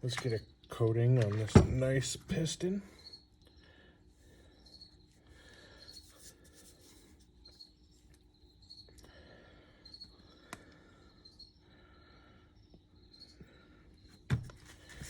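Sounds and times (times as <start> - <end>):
handling noises: 1.2 - 2.4
crickets chirping: 4.4 - 6.2, 7.4 - 14.3.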